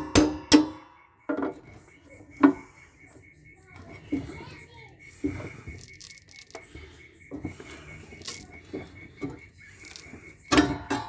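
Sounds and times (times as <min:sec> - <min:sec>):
ringing metal clank: 0:00.0 - 0:01.6, 0:10.5 - 0:11.0
hand tools knocking and scraping: 0:00.0 - 0:11.0.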